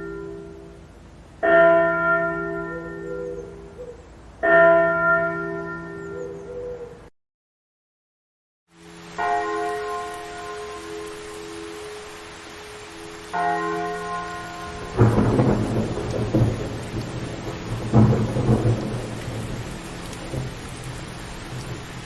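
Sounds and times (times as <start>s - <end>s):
heavy church bell tolling: 1.4s - 3.3s, 4.4s - 6.3s, 9.2s - 11.7s, 13.3s - 20.5s
loud rumbling noise: 15.0s - 22.0s.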